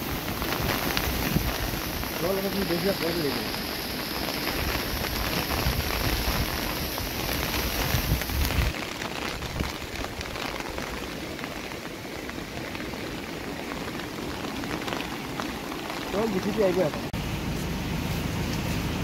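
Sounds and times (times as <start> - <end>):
water hissing: 0.0 - 8.9.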